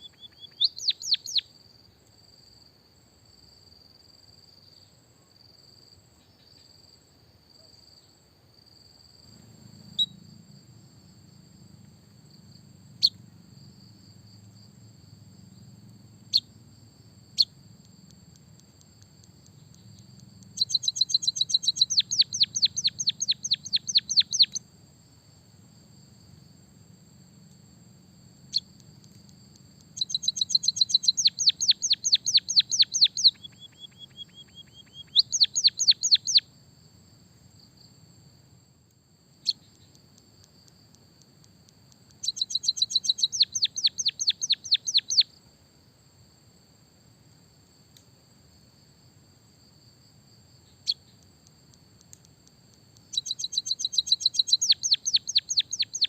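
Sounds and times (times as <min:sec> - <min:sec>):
bird chirping and trilling: 0:00.0 - 0:01.5, 0:20.6 - 0:24.6, 0:30.0 - 0:36.4, 0:42.2 - 0:45.2, 0:53.1 - 0:56.0.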